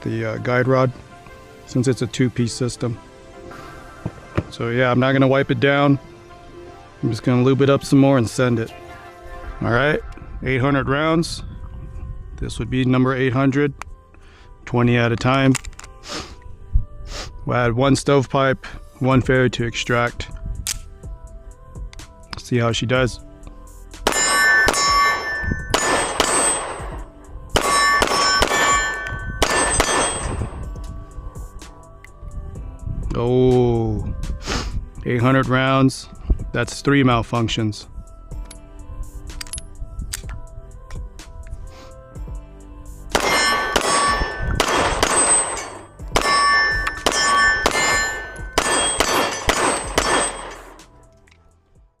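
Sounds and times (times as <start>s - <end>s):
pistol shots: 24.1s - 30.6s, 43.1s - 50.8s
metallic ring of steel targets: 24.1s - 30.7s, 43.1s - 50.8s.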